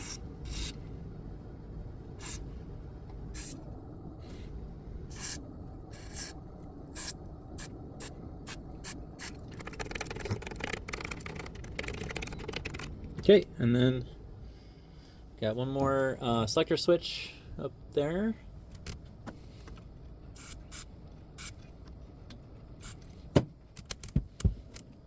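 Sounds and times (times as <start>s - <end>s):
aerosol spray hissing: 2.2s - 2.4s
scratchy crackling: 9.3s - 13.3s.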